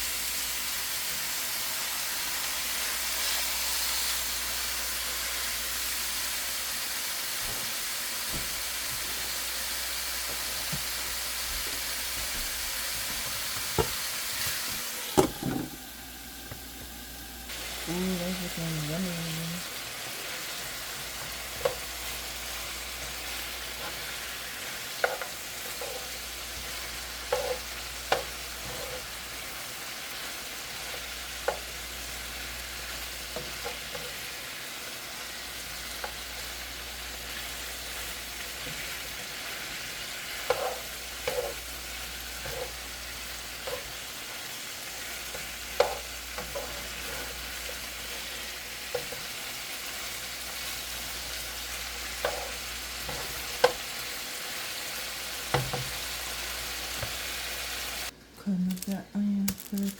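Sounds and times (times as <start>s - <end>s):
chicken sizzling in a pot: 0.0s - 58.2s.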